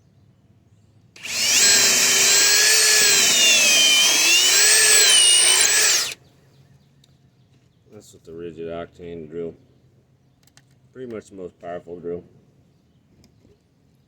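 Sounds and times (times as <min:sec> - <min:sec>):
cordless drill boring into wood: 0:01.2 - 0:06.2.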